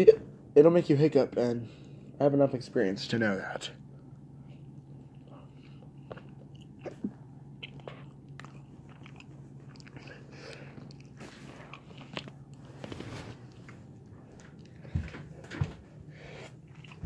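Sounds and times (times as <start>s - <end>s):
faint steady hum: 0.0s - 17.0s
person chewing and crunching: 4.6s - 15.0s, 16.3s - 17.0s.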